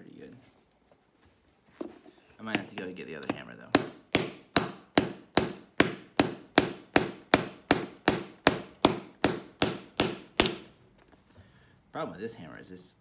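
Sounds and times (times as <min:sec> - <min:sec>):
hammer tapping a nail: 0:02.5 - 0:10.7.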